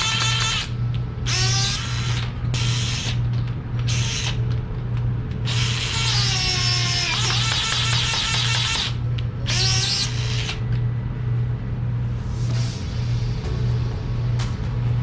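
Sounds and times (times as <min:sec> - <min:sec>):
power drill motor whine: 0:00.0 - 0:03.2, 0:03.8 - 0:04.6, 0:05.4 - 0:10.8
steady low hum: 0:00.0 - 0:15.0.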